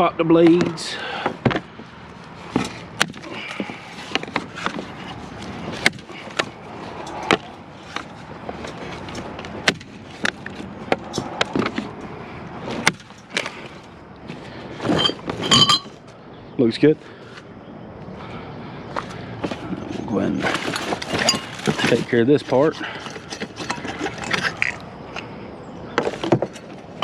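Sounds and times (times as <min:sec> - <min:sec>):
metal clattering: 0:14.8 - 0:16.0, 0:20.3 - 0:24.8.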